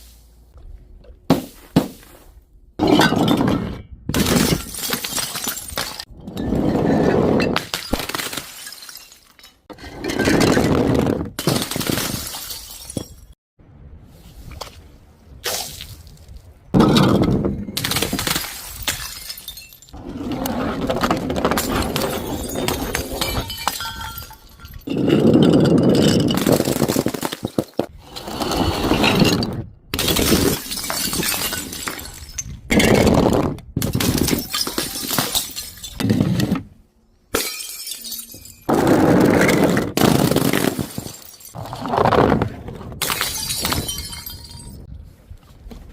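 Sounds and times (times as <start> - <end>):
glass bottles shattering: 2.8 - 10.7, 11.4 - 13.4, 16.8 - 20.0, 21.4 - 27.9, 29.0 - 33.1, 33.8 - 36.2, 37.3 - 38.8, 40.0 - 41.6, 43.0 - 44.9.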